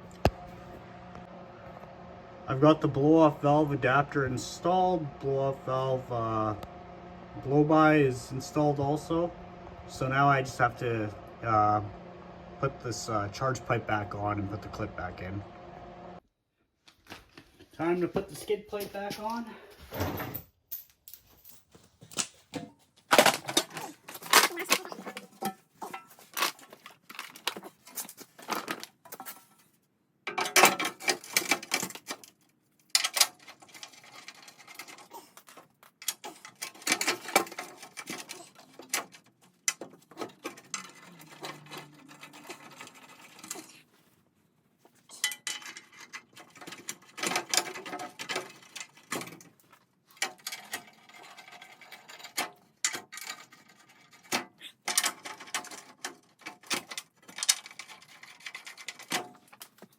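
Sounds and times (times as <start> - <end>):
light metal clanks: 45.1 - 59.9.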